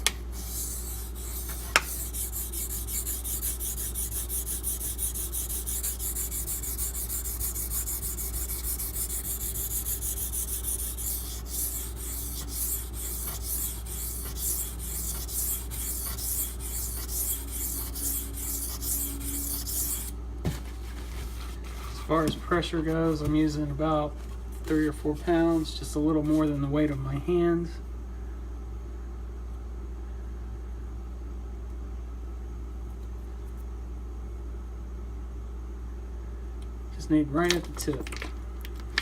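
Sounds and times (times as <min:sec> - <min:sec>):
knife scraping on whetstone: 0:00.4 - 0:20.1.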